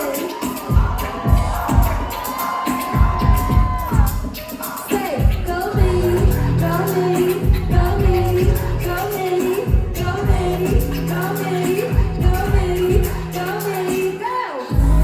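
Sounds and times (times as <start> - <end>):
bass line: 5.8 - 13.5, 14.7 - 15.0.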